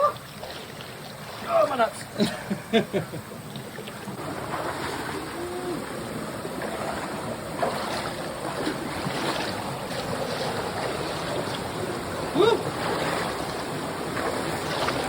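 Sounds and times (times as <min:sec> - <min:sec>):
flowing water rushing: 0:00.0 - 0:15.0.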